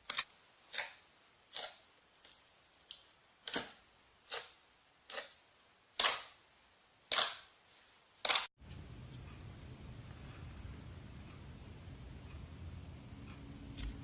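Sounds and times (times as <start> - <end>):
faint hum: 8.6 - 14.0.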